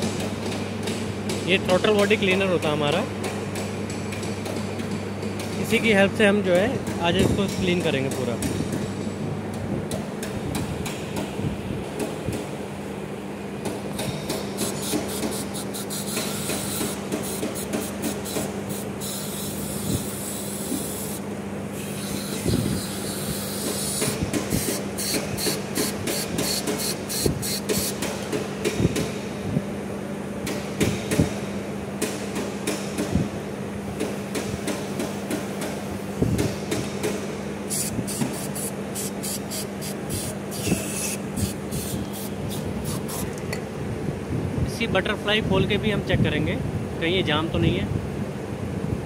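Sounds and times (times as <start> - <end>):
steady low hum: 0.0 - 49.0
aerosol spray hissing bursts: 37.7 - 43.2.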